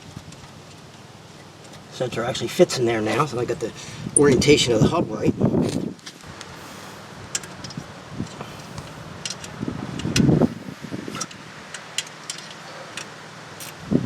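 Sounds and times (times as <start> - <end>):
metal parts and tools clinking: 11.1 - 13.8.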